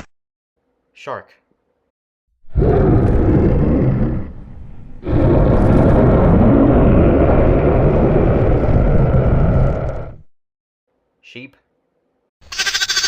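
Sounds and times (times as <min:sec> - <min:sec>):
loud low rumbling: 0:02.5 - 0:10.3.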